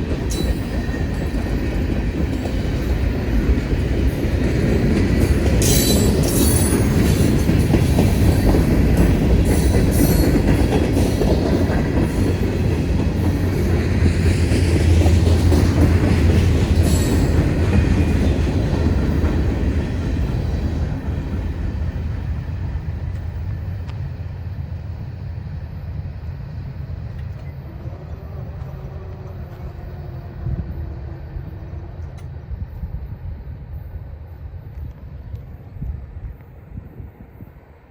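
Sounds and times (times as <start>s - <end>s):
train wheels squealing and clicking: 0.0s - 21.6s, 27.0s - 37.9s
freight train rumbling past: 0.0s - 37.9s.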